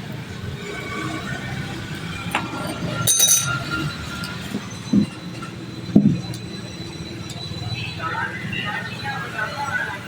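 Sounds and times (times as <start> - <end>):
steady background noise: 0.0 - 10.0
metallic clink: 2.3 - 4.5.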